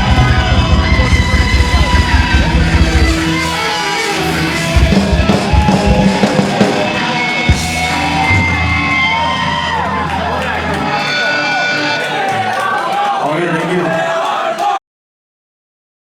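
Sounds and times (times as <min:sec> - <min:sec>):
live punk rock band: 0:00.0 - 0:12.5
shouted vocals: 0:00.0 - 0:14.8.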